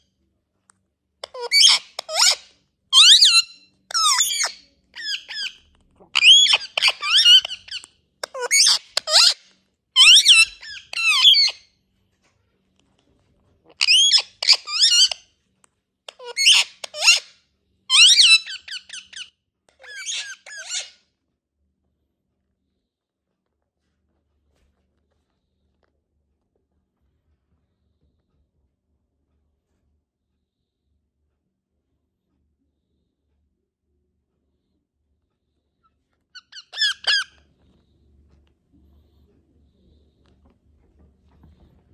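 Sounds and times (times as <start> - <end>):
parrot shrill squeaky calls: 1.2 - 11.7, 13.7 - 15.3, 16.1 - 21.0, 36.4 - 37.4.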